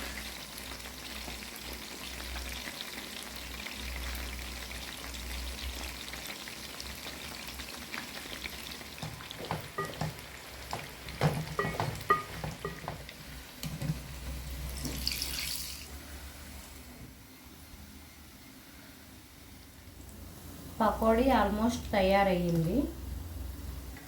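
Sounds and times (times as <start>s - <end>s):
food sizzling in oil: 0.0s - 16.9s.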